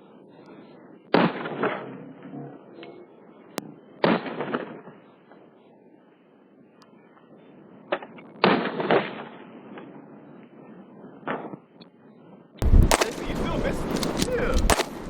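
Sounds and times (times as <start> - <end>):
pistol shots: 12.6 - 15.0.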